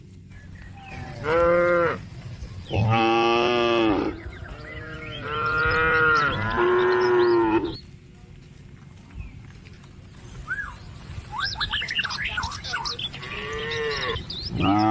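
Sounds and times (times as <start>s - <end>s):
cows mooing: 0.8s - 7.8s, 12.8s - 14.9s.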